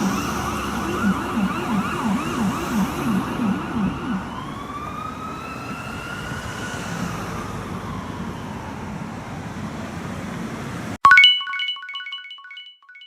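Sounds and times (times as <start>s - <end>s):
emergency siren yelp and wail: 0.0s - 10.0s.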